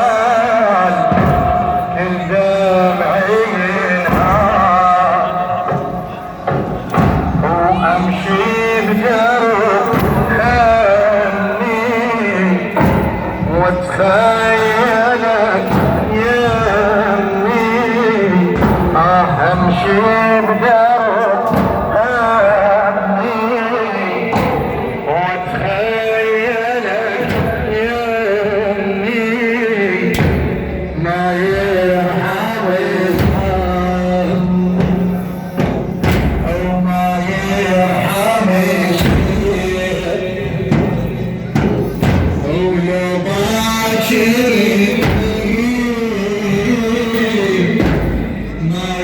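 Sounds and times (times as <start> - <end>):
man chanting a religious lament: 0.0 - 49.0
dull thuds: 0.2 - 23.6, 24.2 - 49.0
dull thump: 1.1 - 1.9, 33.1 - 37.6.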